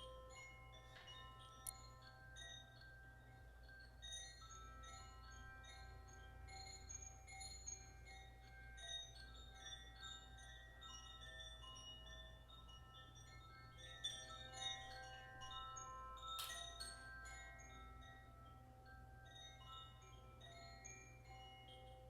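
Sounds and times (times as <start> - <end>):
singing bowl ringing tones: 0.0 - 22.0.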